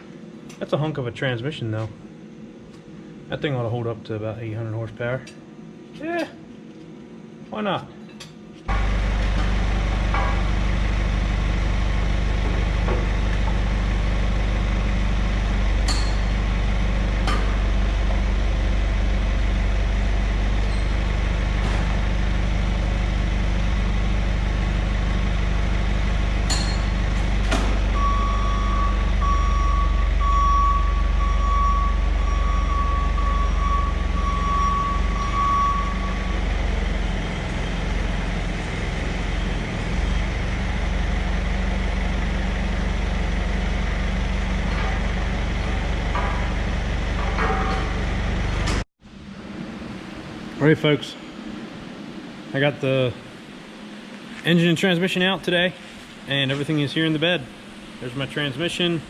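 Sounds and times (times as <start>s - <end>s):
vehicle engine running: 8.7s - 58.8s
reversing alarm beeping: 27.8s - 36.6s.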